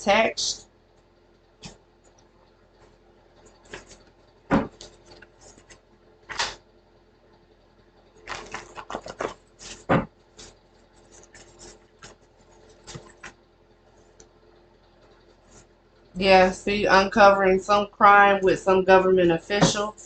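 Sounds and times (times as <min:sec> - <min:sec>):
sharp knocks: 0:04.5 - 0:04.8
handling clicks and rustles: 0:08.2 - 0:14.4.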